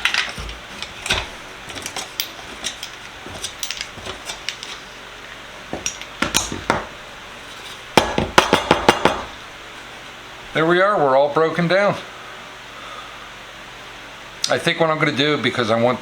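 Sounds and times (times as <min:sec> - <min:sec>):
metal sockets clinking: 0:00.0 - 0:04.8, 0:05.7 - 0:07.0.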